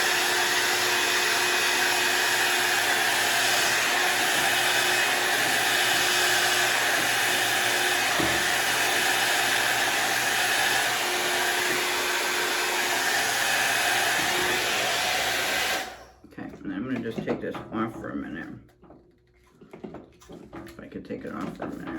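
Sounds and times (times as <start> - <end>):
hot air brush blowing: 0.0 - 16.2.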